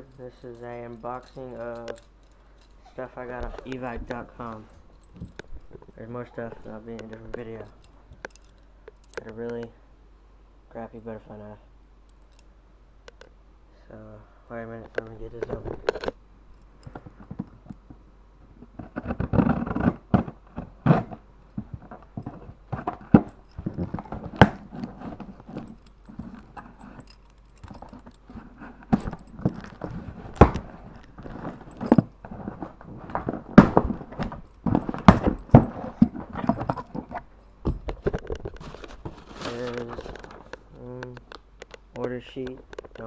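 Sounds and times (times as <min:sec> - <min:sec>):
cardboard box scraping and rustling: 0:38.6 - 0:40.3.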